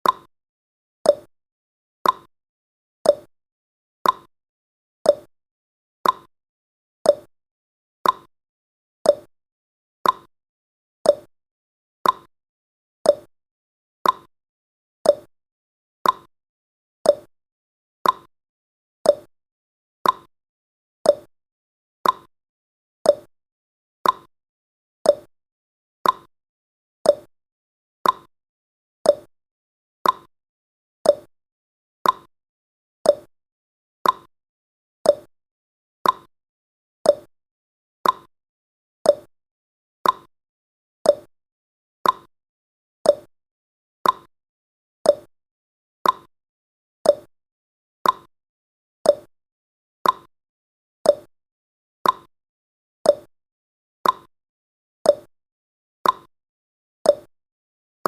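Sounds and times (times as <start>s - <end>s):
timer ticking: 0.0s - 0.3s, 1.1s - 1.3s, 2.0s - 2.3s, 3.1s - 3.3s, 4.0s - 4.3s, 5.1s - 5.3s, 6.0s - 6.3s, 7.1s - 7.3s, 8.0s - 8.3s, 9.1s - 9.3s, 10.0s - 10.3s, 11.1s - 11.3s, 12.0s - 12.3s, 13.1s - 13.3s, 14.0s - 14.3s, 15.1s - 15.3s, 16.0s - 16.3s, 17.1s - 17.3s, 18.0s - 18.3s, 19.1s - 19.3s, 20.0s - 20.3s, 21.1s - 21.3s, 22.0s - 22.3s, 23.1s - 23.3s, 24.0s - 24.3s, 25.1s - 25.3s, 26.0s - 26.3s, 27.1s - 27.3s, 28.0s - 28.3s, 29.1s - 29.3s, 30.0s - 30.3s, 31.0s - 31.3s, 32.0s - 32.3s, 33.1s - 33.3s, 34.0s - 34.3s, 35.1s - 35.3s, 36.0s - 36.3s, 37.1s - 37.3s, 38.0s - 38.3s, 39.1s - 39.3s, 40.0s - 40.3s, 41.1s - 41.3s, 42.0s - 42.3s, 43.1s - 43.3s, 44.0s - 44.3s, 45.1s - 45.3s, 46.0s - 46.3s, 47.0s - 47.3s, 48.0s - 48.3s, 49.1s - 49.3s, 50.0s - 50.3s, 51.1s - 51.3s, 52.0s - 52.3s, 53.1s - 53.3s, 54.0s - 54.3s, 55.1s - 55.3s, 56.0s - 56.3s, 57.1s - 57.3s.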